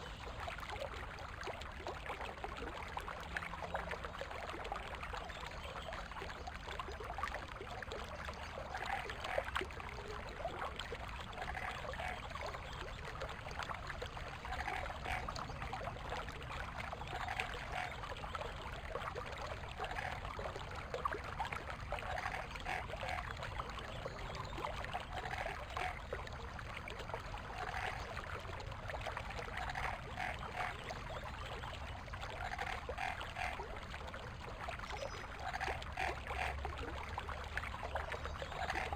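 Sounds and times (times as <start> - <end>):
water flowing over stones: 0.0 - 38.9
water gurgles and splashes: 0.0 - 38.9.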